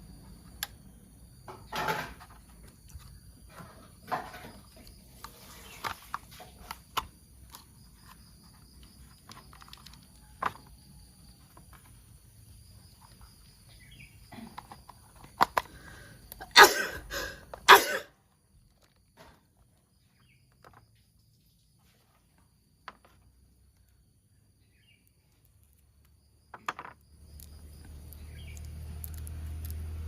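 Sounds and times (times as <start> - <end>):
plastic clattering: 1.5 - 10.8, 14.2 - 15.8, 26.5 - 27.0.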